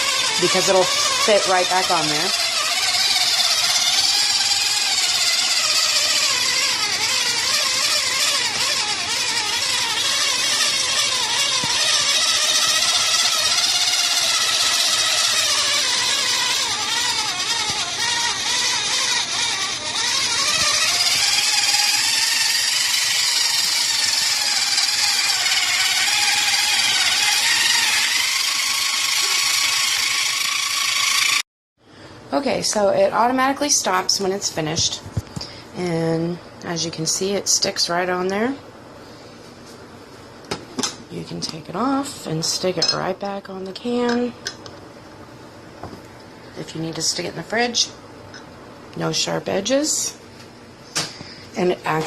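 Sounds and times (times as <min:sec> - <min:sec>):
can opener motor whining: 0:00.0 - 0:31.4.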